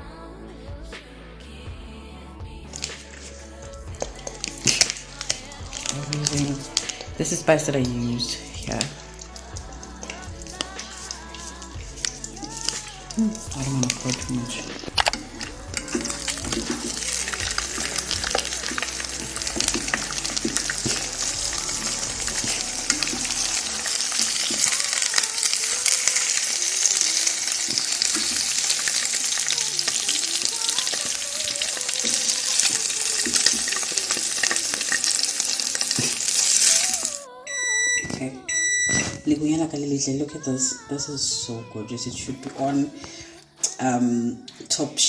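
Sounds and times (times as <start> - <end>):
eggs sizzling in a pan: 2.7 - 38.0
utensil clicking and scraping: 4.0 - 7.2, 8.7 - 36.9.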